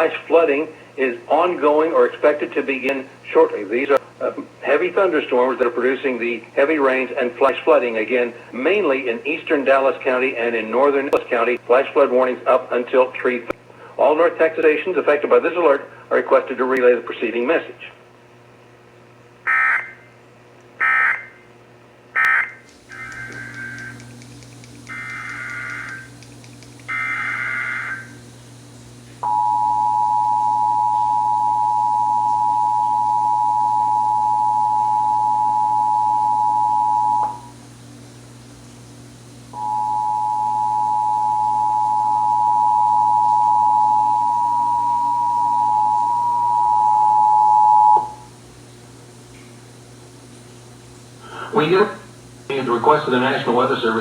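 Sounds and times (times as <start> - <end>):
faint low hum: 0.0 - 54.0
warbling digital data bursts: 22.9 - 28.2
two-tone alert signal: 39.6 - 48.2.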